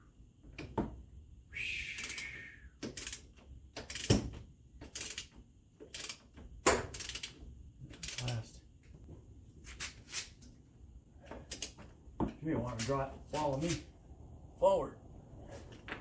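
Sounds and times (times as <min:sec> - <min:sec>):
metal tools clicking and knocking: 0:04.8 - 0:08.5.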